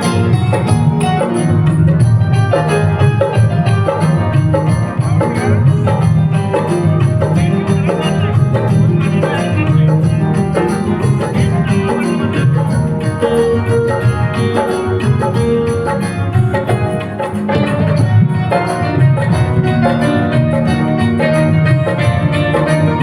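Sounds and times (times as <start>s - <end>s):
music with a steady beat: 0.0s - 23.0s.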